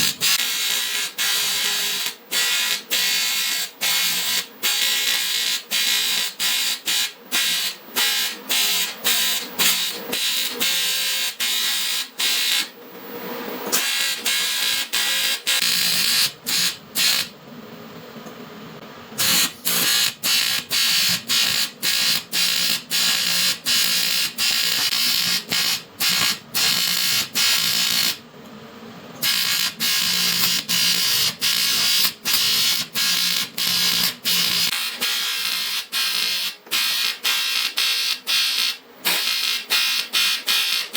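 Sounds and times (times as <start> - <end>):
welding arc buzzing and crackling: 0.0 - 12.7, 13.7 - 17.3, 19.2 - 28.2, 29.2 - 40.9.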